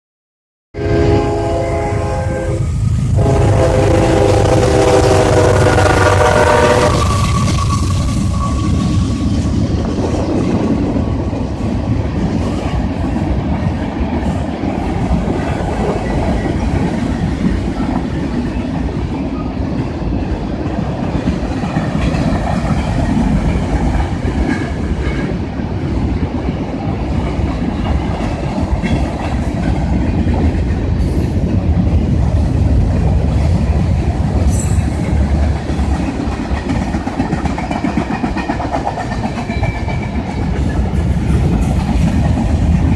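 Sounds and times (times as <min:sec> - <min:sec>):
freight train rumbling: 0:00.8 - 0:42.9
wheels clicking over rail joints: 0:27.2 - 0:42.9.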